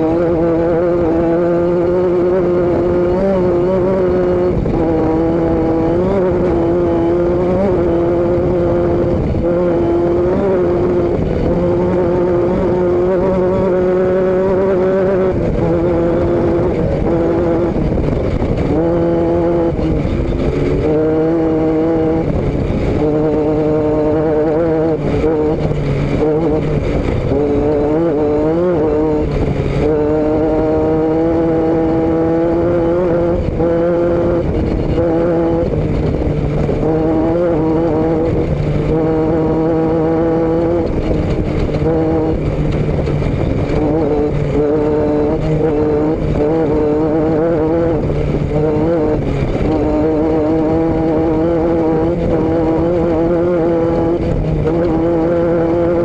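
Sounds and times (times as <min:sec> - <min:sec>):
constant rushing noise: 0:00.0 - 0:56.0
vehicle engine running: 0:00.0 - 0:56.0.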